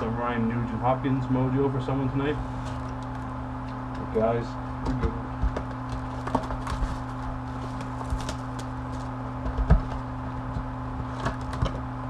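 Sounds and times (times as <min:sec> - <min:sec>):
steady electrical hum: 0:00.0 - 0:12.0
card packs tapping and rustling: 0:04.9 - 0:11.8.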